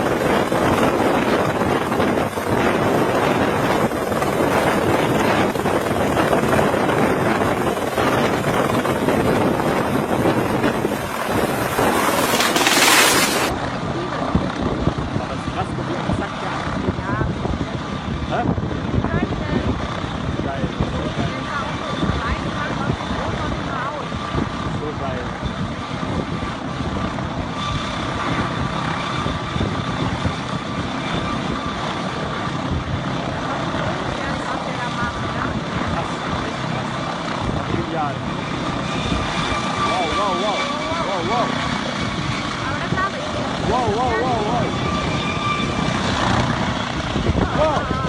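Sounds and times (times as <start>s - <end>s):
helicopter rotor beating: 0.0s - 48.0s
helicopter turbine whine: 0.0s - 48.0s
wind buffeting microphone: 0.0s - 48.0s.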